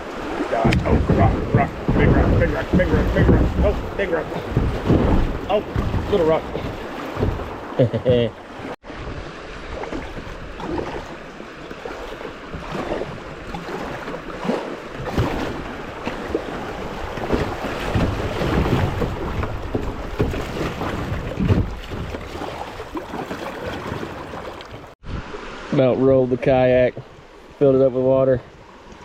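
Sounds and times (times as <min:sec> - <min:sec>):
wind buffeting microphone: 0:00.0 - 0:08.2
creek water rushing and splashing: 0:00.0 - 0:29.0.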